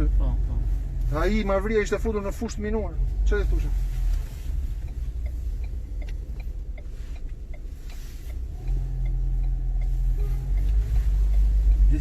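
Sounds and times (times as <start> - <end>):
car engine and road rumble: 0.0 - 12.0
faint even ticking: 3.1 - 12.0.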